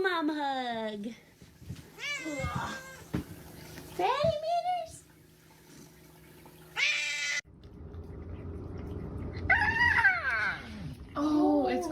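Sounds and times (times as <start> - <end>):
cat meowing: 2.0 - 3.1, 6.8 - 7.4.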